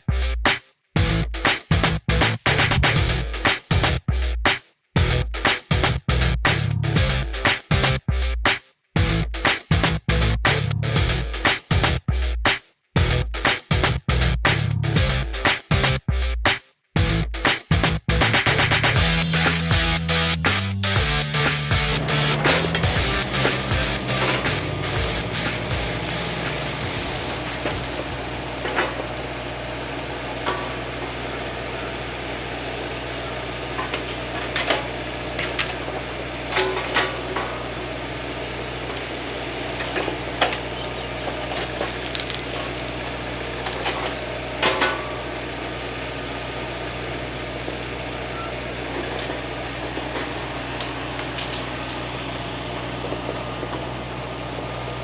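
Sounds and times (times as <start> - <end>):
excavator diesel engine running: 18.6 - 55.0
sharp knocks and cracks: 41.6 - 43.0.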